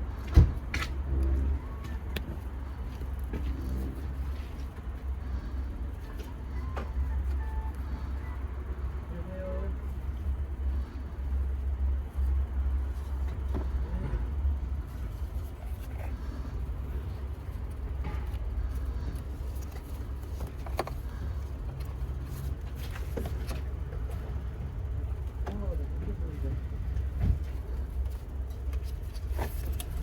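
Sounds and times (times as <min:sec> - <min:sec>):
car engine running: 0:00.1 - 0:30.0.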